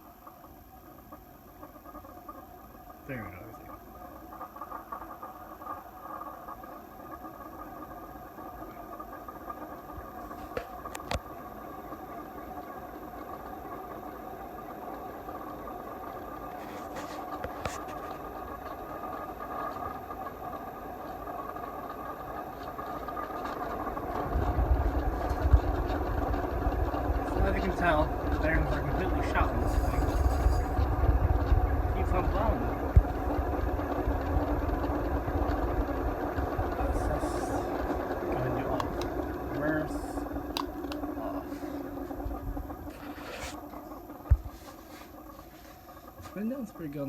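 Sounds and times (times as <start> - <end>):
ceiling fan with grinding bearings: 0.0 - 47.0
clicks: 37.7 - 42.2.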